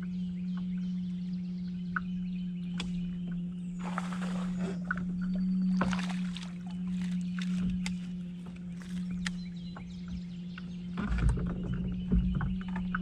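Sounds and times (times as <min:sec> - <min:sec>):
steady low hum: 0:00.0 - 0:13.0
water splashing: 0:03.7 - 0:09.4.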